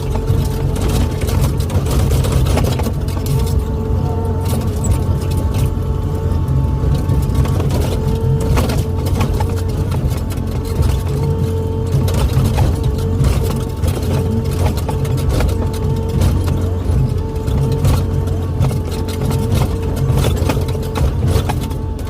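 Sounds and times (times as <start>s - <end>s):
excavator diesel engine running: 0.0s - 22.0s
hydraulic whine: 0.0s - 22.0s
machine knocks and clanks: 0.0s - 22.0s.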